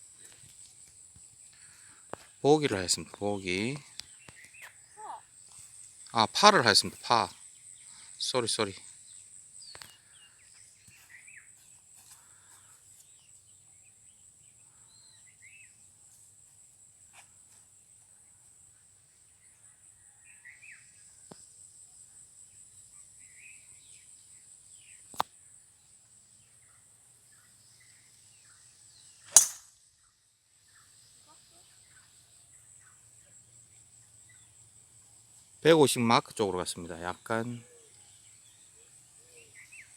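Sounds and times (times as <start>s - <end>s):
high insect drone: 0.0s - 39.9s
bird chirps: 3.0s - 11.7s, 36.5s - 39.9s
golf driver striking ball: 29.3s - 29.7s
sharp click: 29.3s - 29.7s.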